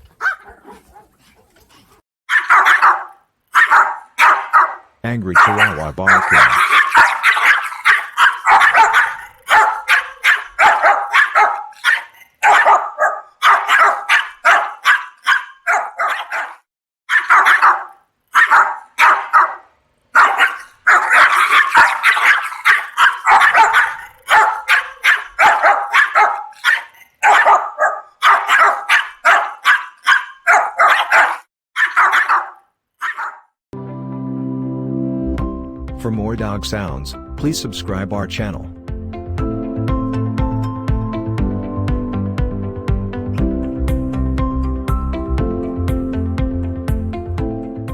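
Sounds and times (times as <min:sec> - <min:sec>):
small dog barking: 0:00.0 - 0:01.6, 0:02.3 - 0:33.6.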